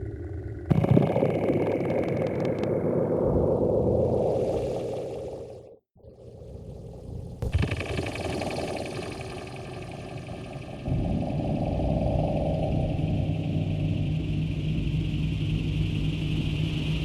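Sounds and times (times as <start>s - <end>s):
steady low drone: 0.0s - 17.0s
engine-like rumble: 5.4s - 17.0s
experimental electronic music: 7.4s - 11.0s.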